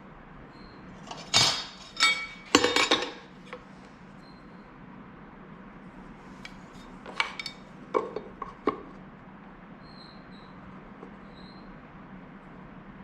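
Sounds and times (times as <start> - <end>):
faint steady hum: 0.0 - 13.0
metal tools clinking: 1.0 - 3.3, 6.8 - 8.3.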